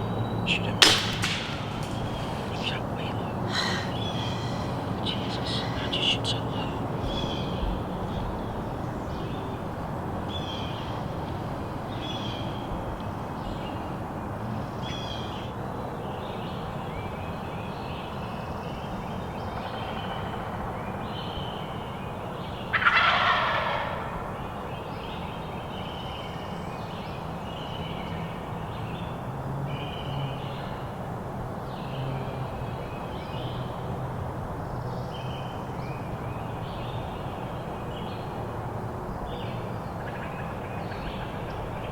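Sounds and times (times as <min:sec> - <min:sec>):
turkey gobbling: 0:00.5 - 0:07.3, 0:22.7 - 0:24.2.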